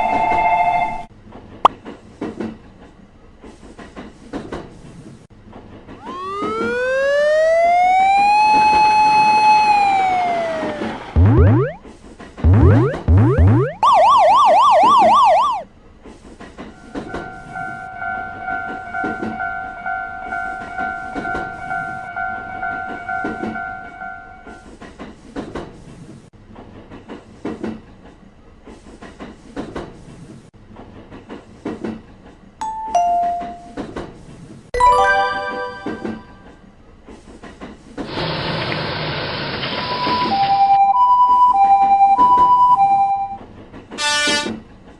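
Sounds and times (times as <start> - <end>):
warbling siren-like tone: 6.0 - 11.8, 12.5 - 15.6
railway crossing alarm ringing: 16.8 - 24.6, 32.6 - 33.8, 39.9 - 43.4
two-note falling chime: 32.6 - 33.8, 34.8 - 36.4
short horn blast: 44.0 - 44.6.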